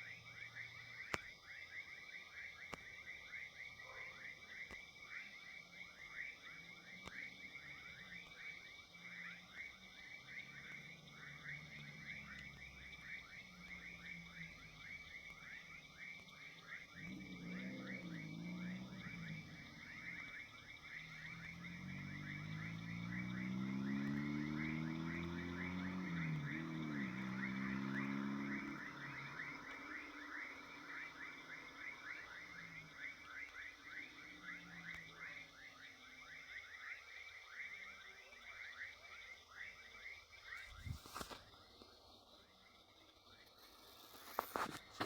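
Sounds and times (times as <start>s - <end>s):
vehicle engine revving: 17.0s - 20.2s, 21.0s - 31.7s.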